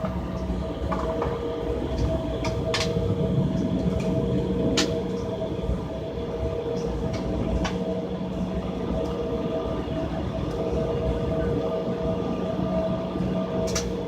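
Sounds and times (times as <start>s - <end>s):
jet engine hum: 0.0s - 14.0s.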